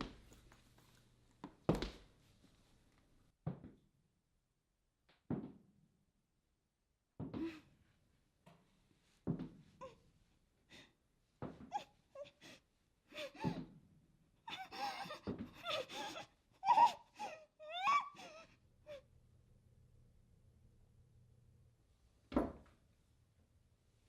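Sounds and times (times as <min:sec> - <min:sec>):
person gasping and whimpering: 0:14.5 - 0:19.0
faint low hum: 0:18.2 - 0:24.0.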